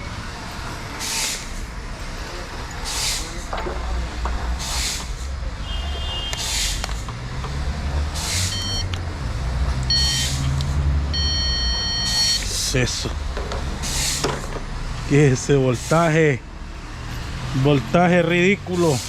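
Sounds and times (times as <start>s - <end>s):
short hissing bursts: 4.6s - 5.2s, 6.4s - 6.8s, 13.8s - 14.2s, 18.8s - 19.0s
short electronic beeps: 8.5s - 8.9s, 9.9s - 10.4s, 11.1s - 12.5s.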